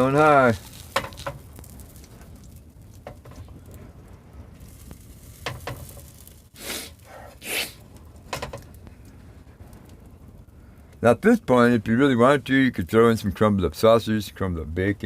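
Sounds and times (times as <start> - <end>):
eggs sizzling in a skillet: 0.0 - 3.6, 4.5 - 7.0.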